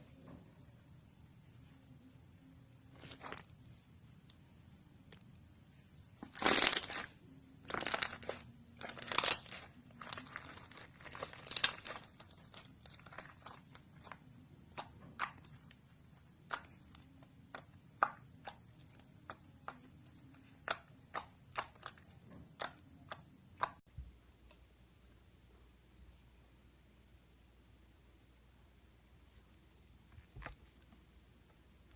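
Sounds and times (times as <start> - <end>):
slime crackling: 2.9 - 3.5, 6.2 - 23.8
slime popping: 6.2 - 7.1, 7.7 - 15.7, 16.4 - 23.8.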